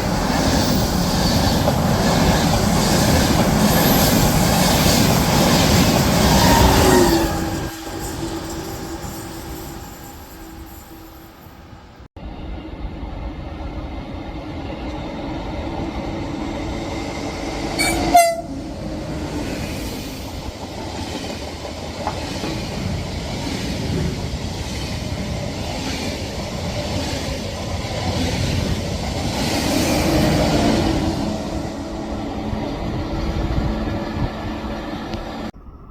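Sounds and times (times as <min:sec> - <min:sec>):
train rumbling on rails: 0:00.0 - 0:35.9
train horn blast: 0:17.8 - 0:18.8.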